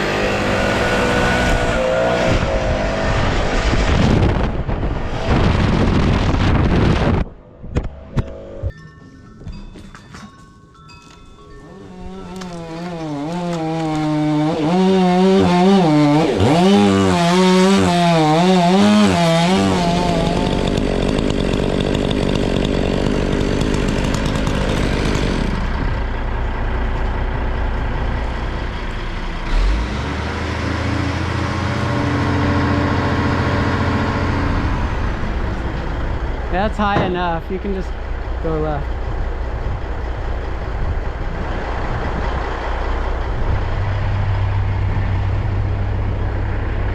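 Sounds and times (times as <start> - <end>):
deep steady engine rumble: 3.9 - 46.9
chainsaw cutting at high revs: 11.7 - 25.9.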